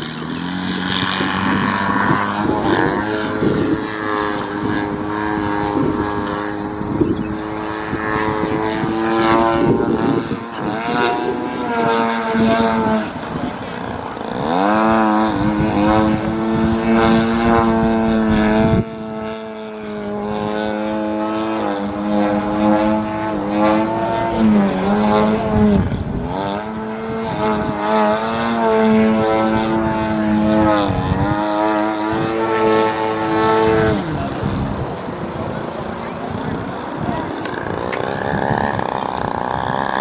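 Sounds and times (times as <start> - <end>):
model plane motor droning: 0.0 - 40.0.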